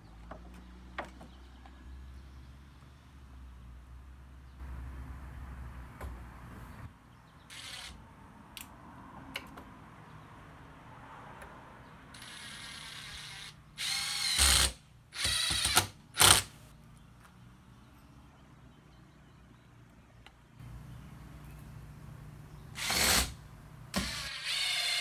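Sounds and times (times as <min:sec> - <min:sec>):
power driver driving screw: 0:12.2 - 0:16.6, 0:22.8 - 0:25.0.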